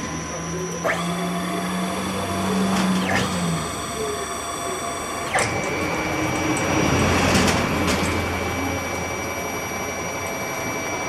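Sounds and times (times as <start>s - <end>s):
motor click: 0.0s - 8.2s
stepper motors whining: 0.0s - 11.0s.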